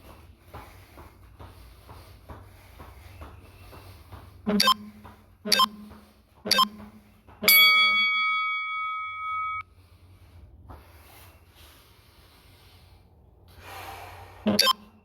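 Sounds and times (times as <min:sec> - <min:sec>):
short timer beeps: 0:04.5 - 0:04.9, 0:05.5 - 0:05.8, 0:06.5 - 0:06.8, 0:07.4 - 0:09.6, 0:14.5 - 0:14.9
long timer beep: 0:04.6 - 0:04.8, 0:05.5 - 0:05.8, 0:06.5 - 0:06.8, 0:07.4 - 0:09.6, 0:14.5 - 0:14.9.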